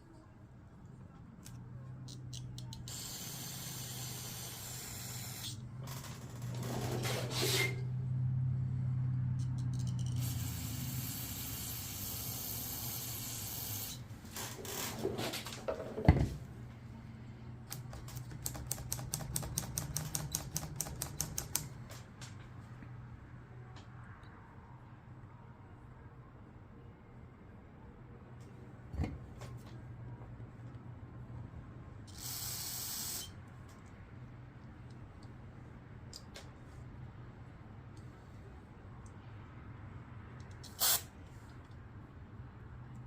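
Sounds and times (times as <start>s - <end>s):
spray hissing: 10.2s - 14.0s, 32.2s - 33.3s, 40.7s - 41.1s
fast clicks: 17.7s - 21.7s.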